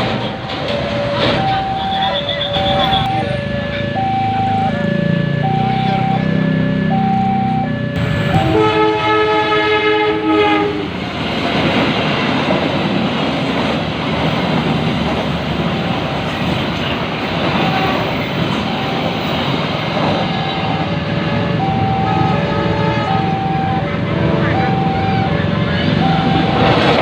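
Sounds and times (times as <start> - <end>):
train rumbling on rails: 0.0 - 27.0
train horn blast: 8.0 - 11.0, 20.9 - 24.6.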